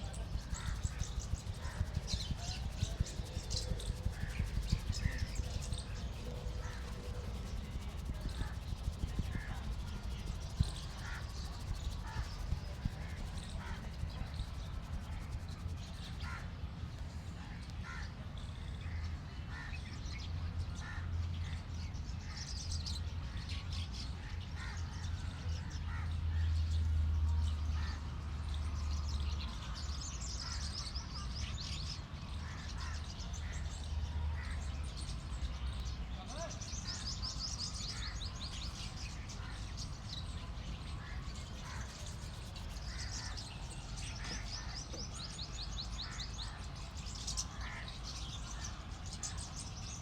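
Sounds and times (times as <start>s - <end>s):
high bird chirping: 0.0s - 16.1s
harsh bird calls: 0.0s - 16.5s, 32.3s - 50.0s
steady low rumble: 0.0s - 17.7s, 36.8s - 49.8s.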